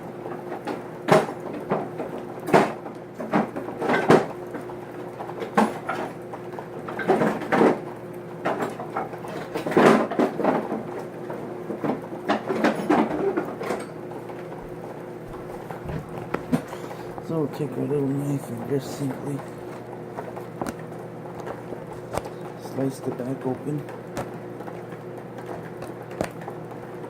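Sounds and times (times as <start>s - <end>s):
faint steady hum: 12.9s - 24.7s.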